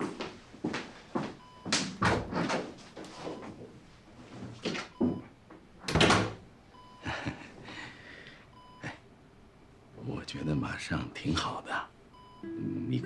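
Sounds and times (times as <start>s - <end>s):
door opening and closing: 1.8s - 2.7s, 5.8s - 6.4s.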